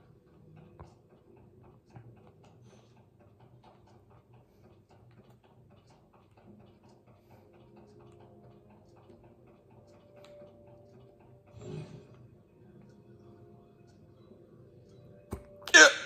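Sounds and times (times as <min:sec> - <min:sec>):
soft ticks: 0:00.0 - 0:11.6.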